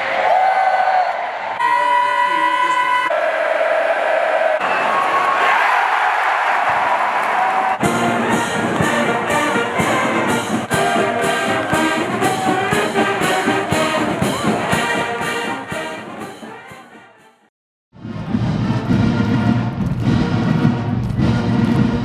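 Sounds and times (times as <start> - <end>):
drum and cymbal beat: 7.8 - 16.9
brass marching band playing: 7.8 - 22.0.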